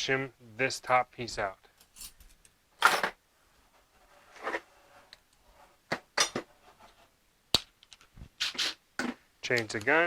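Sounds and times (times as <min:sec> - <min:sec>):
metal tools scraping: 0:01.8 - 0:03.2.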